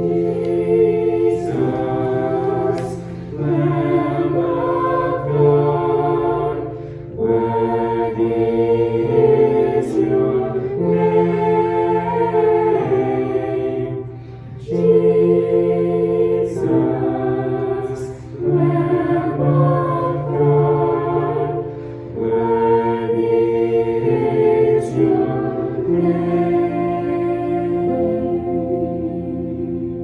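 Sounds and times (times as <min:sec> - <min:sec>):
choir singing a hymn: 0:00.0 - 0:30.0
singers breathing: 0:03.0 - 0:03.4, 0:06.7 - 0:07.2, 0:14.0 - 0:14.7, 0:21.6 - 0:22.2.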